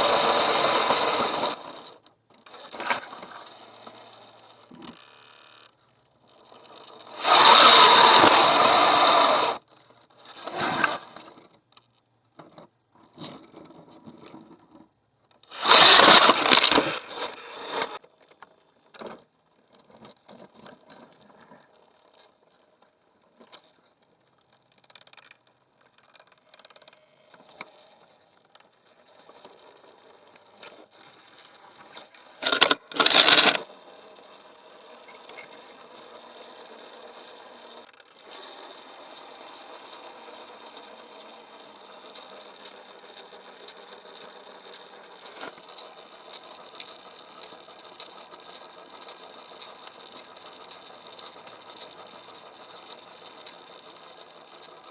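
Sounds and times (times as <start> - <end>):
electric motor and gears whining: 0.0 - 5.7, 6.3 - 11.4, 15.4 - 18.0, 28.9 - 54.9.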